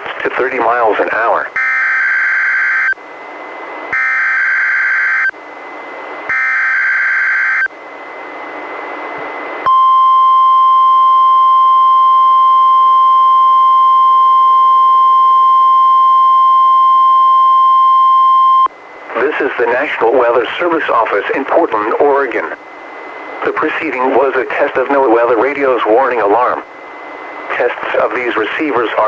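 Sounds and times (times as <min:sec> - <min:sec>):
radio hiss: 0:00.0 - 0:01.6, 0:18.3 - 0:29.0
steady warning alarm tone: 0:00.6 - 0:29.0.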